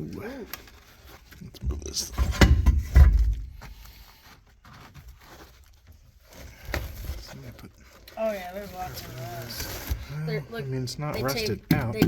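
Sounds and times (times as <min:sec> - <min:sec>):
heavy thumps and knocks: 0:02.2 - 0:03.6.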